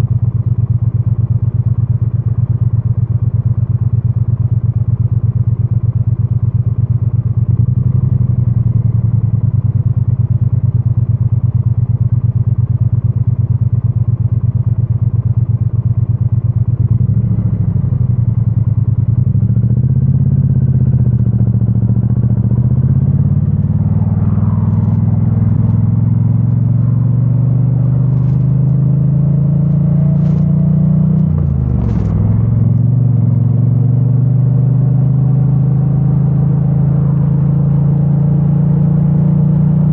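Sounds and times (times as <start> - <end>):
motorcycle engine revving: 16.8 - 39.9.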